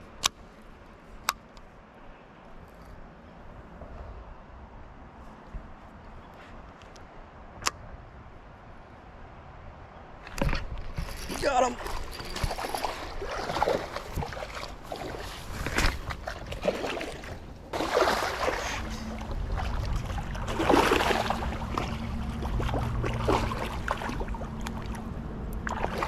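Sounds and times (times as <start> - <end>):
fish splashing in water: 10.4 - 26.0.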